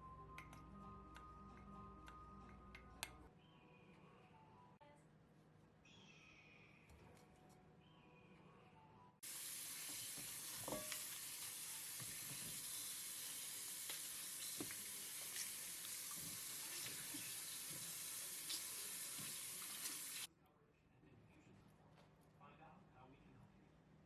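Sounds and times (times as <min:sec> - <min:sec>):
tap water running into sink: 0:09.2 - 0:20.3.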